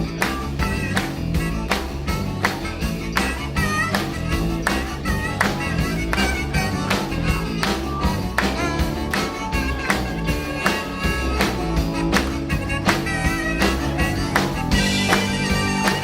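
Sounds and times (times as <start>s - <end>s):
live rock band playing: 0.0s - 16.0s.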